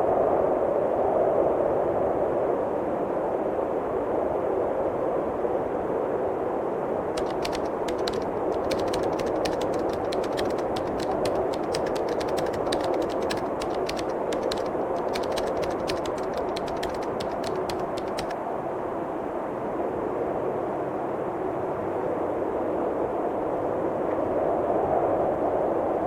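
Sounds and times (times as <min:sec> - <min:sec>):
rapid dry clicks: 0:07.2 - 0:18.4.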